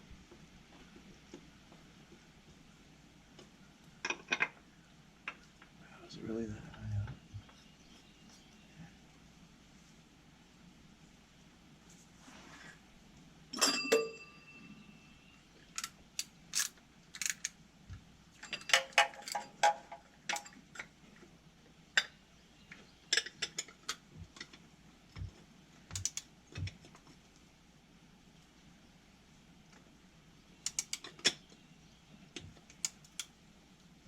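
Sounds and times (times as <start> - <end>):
metal tools clinking: 13.6 - 14.4, 18.4 - 20.6.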